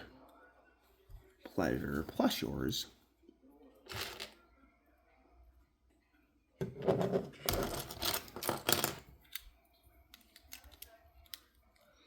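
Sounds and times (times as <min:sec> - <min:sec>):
plastic pieces clicking and clattering: 0:07.4 - 0:09.5.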